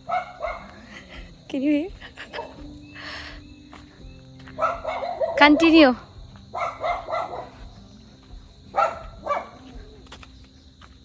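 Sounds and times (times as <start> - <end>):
dogs barking: 0.0 - 1.4, 2.0 - 3.3, 4.4 - 10.2.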